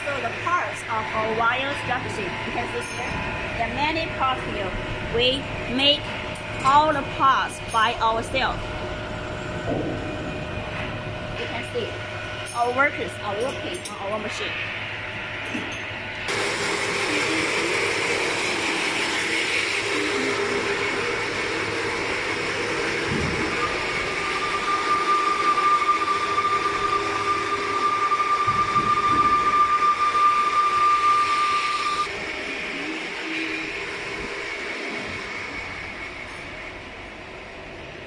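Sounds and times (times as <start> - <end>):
steady high whine: 0.0 - 38.0
electric welding crackling hiss: 16.3 - 30.0.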